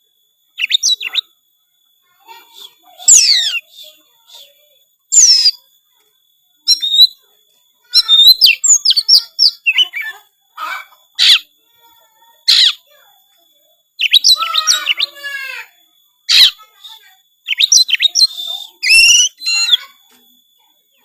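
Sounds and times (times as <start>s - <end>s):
bird singing varied phrases: 0.6s - 1.4s, 2.3s - 5.6s, 6.6s - 7.2s, 7.8s - 11.6s, 12.4s - 12.9s, 14.0s - 20.0s.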